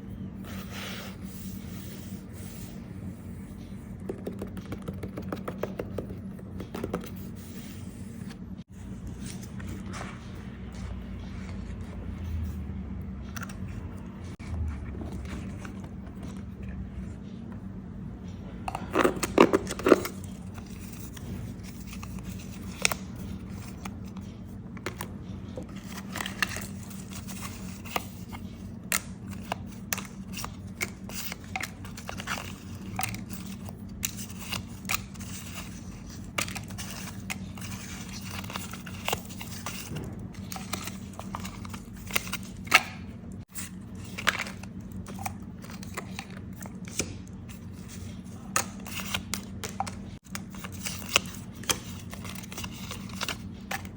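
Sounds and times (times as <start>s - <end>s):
steady low hum: 0.0s - 53.9s
paper rustling and crinkling: 13.4s - 16.7s, 19.2s - 53.9s.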